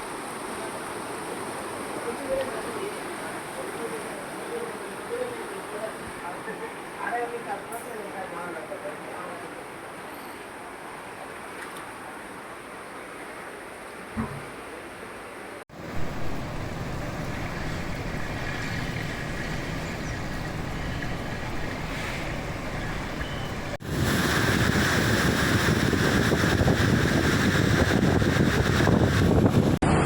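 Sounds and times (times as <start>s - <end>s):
floodwater rushing: 0.0s - 7.0s, 9.5s - 30.0s
heavy rain: 15.7s - 30.0s.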